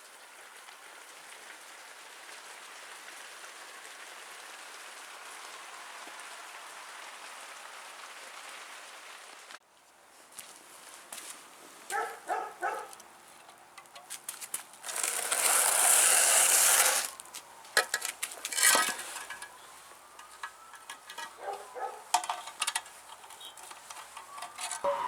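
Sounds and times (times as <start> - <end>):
loud hissing scrape: 14.8 - 17.2
metal tools clinking: 17.8 - 25.0.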